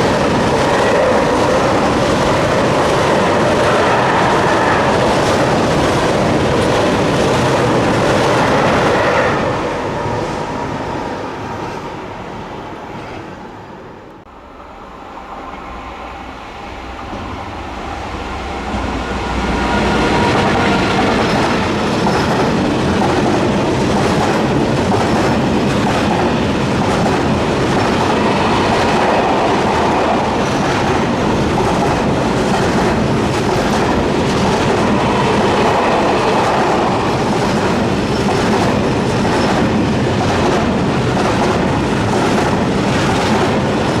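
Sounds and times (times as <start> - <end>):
train wheels clacking over rails: 0.0 - 9.5, 18.5 - 44.0.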